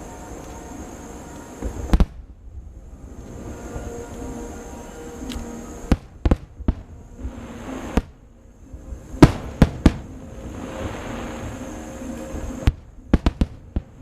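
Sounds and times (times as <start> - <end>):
fireworks crackling: 0.0 - 14.0
fireworks bursting in sharp bangs: 1.6 - 2.2, 9.2 - 11.4, 12.6 - 14.0.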